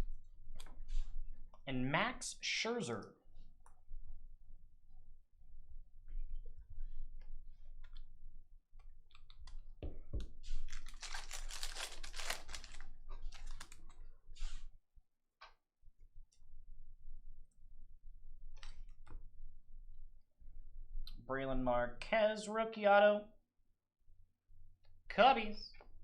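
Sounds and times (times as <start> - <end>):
rustling: 10.4 - 14.7.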